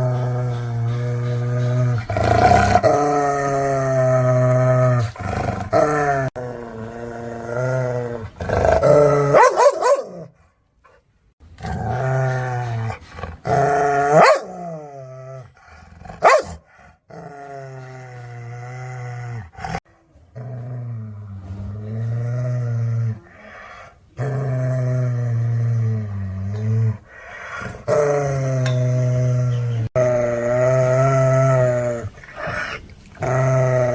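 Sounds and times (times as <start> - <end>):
dog growling: 0.0 - 10.3, 11.6 - 33.9
dog barking: 9.3 - 10.3, 14.2 - 14.5, 16.2 - 16.6.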